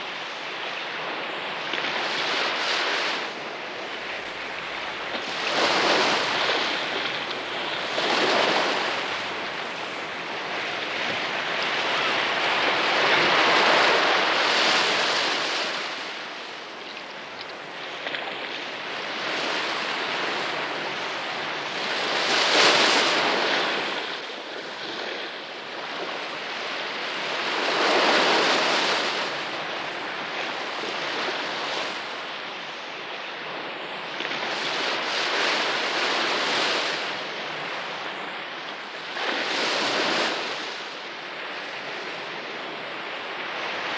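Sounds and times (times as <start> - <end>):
sea waves washing: 1.0 - 16.0.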